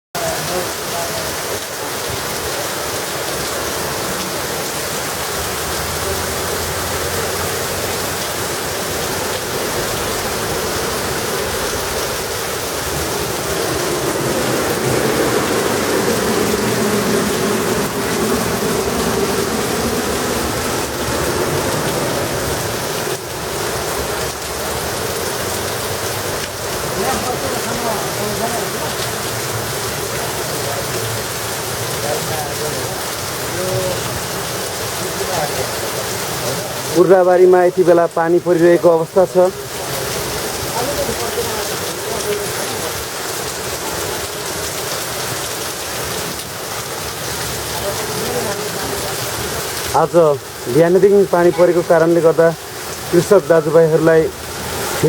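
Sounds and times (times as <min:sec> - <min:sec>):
steady rainfall: 0:00.1 - 0:55.0
low hum: 0:12.9 - 0:21.9.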